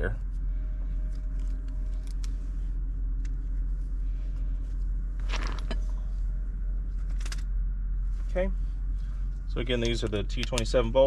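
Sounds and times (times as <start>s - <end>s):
low background rumble: 0.0s - 11.0s
light metallic clicks: 9.8s - 10.8s.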